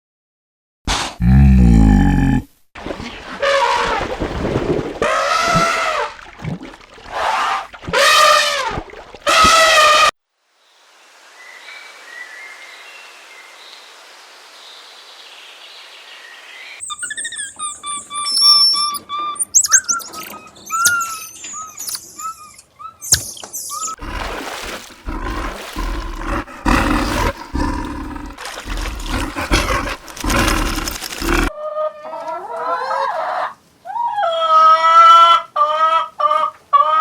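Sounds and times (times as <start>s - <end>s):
birds chirping: 16.7s - 31.5s.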